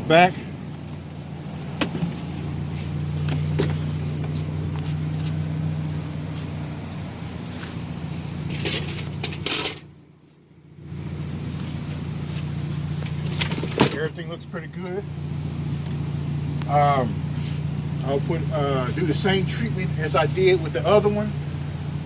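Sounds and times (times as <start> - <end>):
car engine idling: 0.0 - 22.0.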